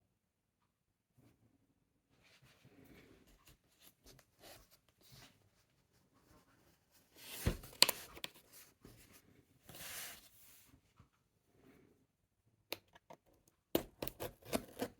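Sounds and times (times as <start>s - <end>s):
cardboard scraping and rustling: 7.1s - 9.1s.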